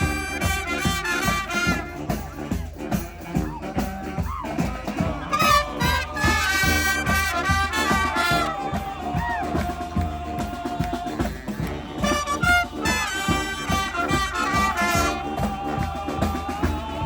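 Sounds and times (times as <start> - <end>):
brass horns playing melody: 0.0 - 17.0
steady drum beat: 0.0 - 17.0.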